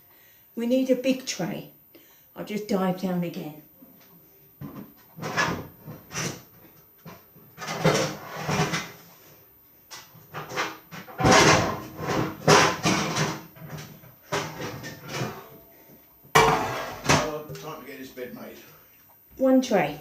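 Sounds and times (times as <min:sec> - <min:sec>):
metal baking trays clattering: 0:16.4 - 0:17.4.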